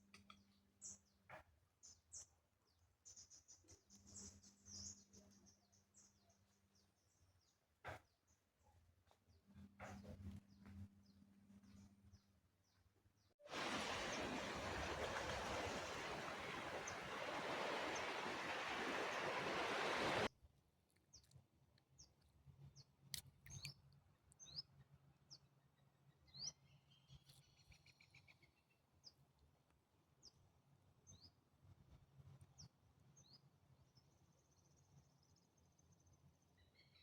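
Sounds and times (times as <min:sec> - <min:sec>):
birds chirping: 0:13.5 - 0:20.3.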